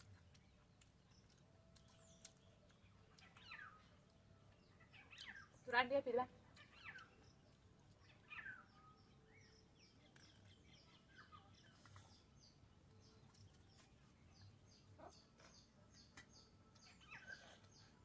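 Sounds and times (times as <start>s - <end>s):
bird calls: 0.3s - 5.7s, 6.5s - 18.0s
high bird chirp: 1.2s - 5.9s, 6.5s - 18.0s.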